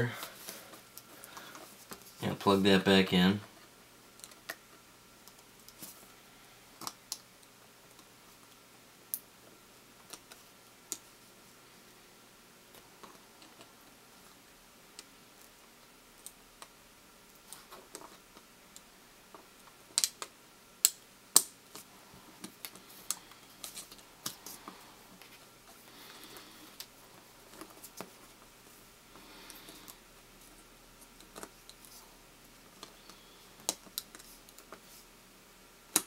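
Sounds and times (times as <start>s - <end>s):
hands clicking plastic laptop parts: 17.4s - 25.3s, 31.0s - 32.0s, 32.7s - 34.8s.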